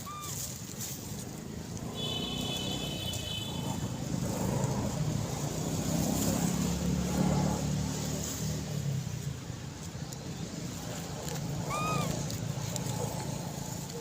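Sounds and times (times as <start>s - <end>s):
vehicle engine rumbling: 0.0s - 14.0s.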